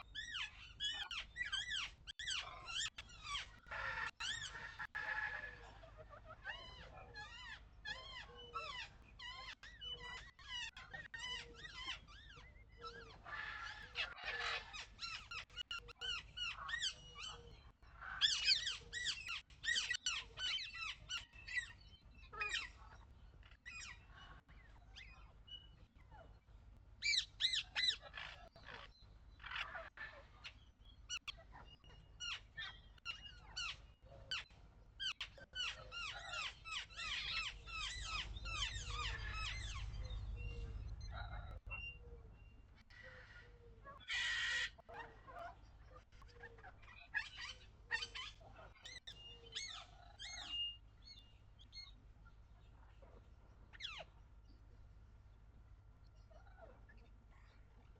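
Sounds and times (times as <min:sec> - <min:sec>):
small birds twittering: 0:00.0 - 0:57.9.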